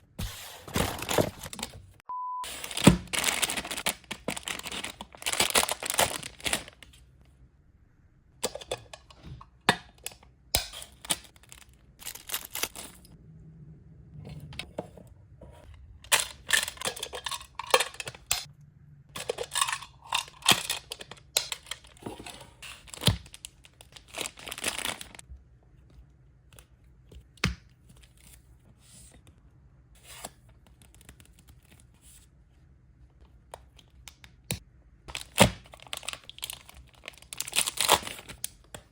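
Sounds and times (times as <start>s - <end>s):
packaging torn and crinkled: 0.2s - 1.8s, 2.6s - 6.9s, 11.0s - 13.1s, 19.6s - 22.0s, 22.8s - 25.2s, 35.1s - 38.7s.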